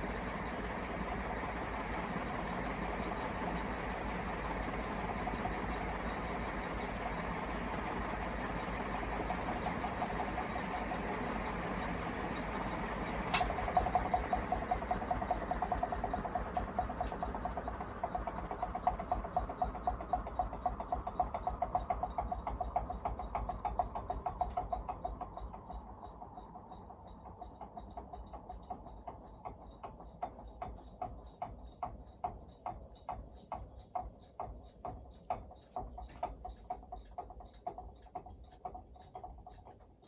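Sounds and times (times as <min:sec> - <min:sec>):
ceiling fan pulsing: 0:00.0 - 0:30.5.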